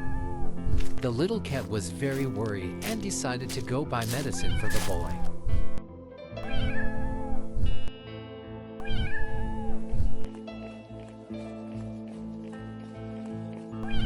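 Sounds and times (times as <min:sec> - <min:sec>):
cat meowing: 0:08.8 - 0:09.7, 0:13.8 - 0:14.0.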